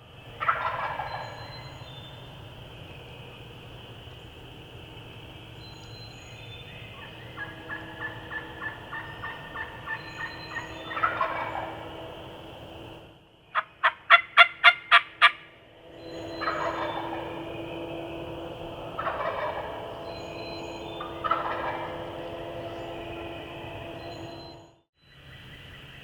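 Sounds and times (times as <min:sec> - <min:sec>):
turkey hen yelping: 0:00.4 - 0:01.3, 0:07.4 - 0:11.8, 0:13.6 - 0:15.5, 0:16.4 - 0:17.3, 0:19.0 - 0:19.8, 0:21.0 - 0:22.0
loud sharp turkey yelps: 0:00.4 - 0:01.7, 0:07.0 - 0:11.7, 0:13.5 - 0:15.5, 0:16.4 - 0:17.2, 0:19.0 - 0:19.8, 0:21.2 - 0:21.9
turkey gobbling: 0:00.4 - 0:01.8, 0:07.0 - 0:12.0, 0:13.5 - 0:15.5, 0:16.2 - 0:24.1.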